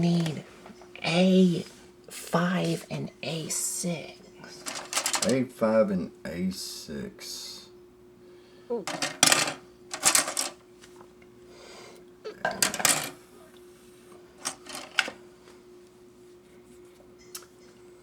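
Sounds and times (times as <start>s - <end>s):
faint steady hum: 0.0s - 18.0s
plastic parts clattering: 4.6s - 5.4s, 8.9s - 10.6s, 12.5s - 13.2s, 14.4s - 15.2s.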